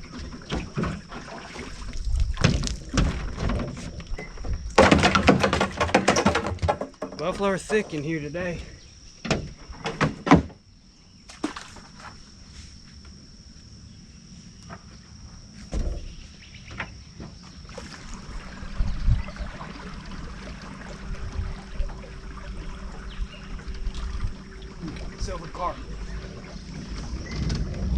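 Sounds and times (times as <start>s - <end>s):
gear clicking and rumbling in boat: 0.0s - 8.6s, 15.8s - 27.9s
sharp knocks: 4.8s - 8.0s
steady high-pitched whine: 10.6s - 27.9s.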